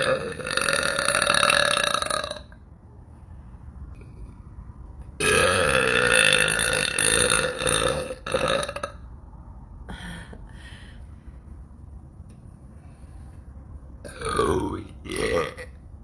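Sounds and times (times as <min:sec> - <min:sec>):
woman burping: 0:14.1 - 0:15.7.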